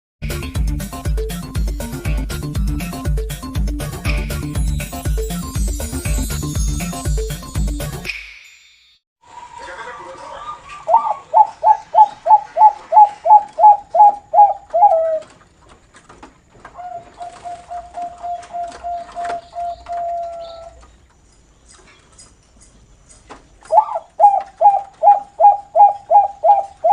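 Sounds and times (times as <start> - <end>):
dove cooing: 10.4 - 15.4, 16.8 - 20.8, 23.7 - 26.9.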